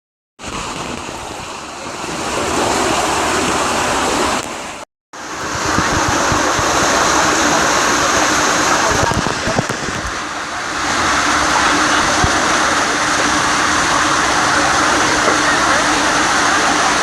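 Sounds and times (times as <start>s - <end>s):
rushing water: 0.4s - 17.0s
wind on microphone: 5.2s - 17.0s.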